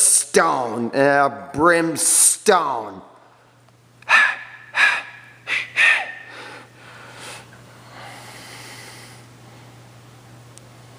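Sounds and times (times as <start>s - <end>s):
low electrical hum: 0.0s - 10.9s
person gasping: 4.0s - 9.3s
person breathing: 4.0s - 9.7s.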